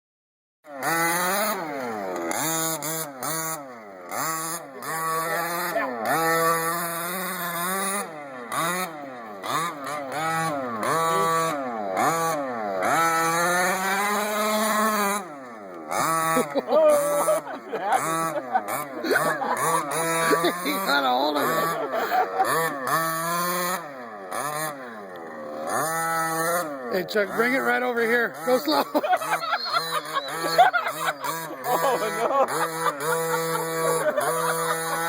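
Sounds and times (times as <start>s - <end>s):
small two-stroke engine revving: 0.6s - 35.0s.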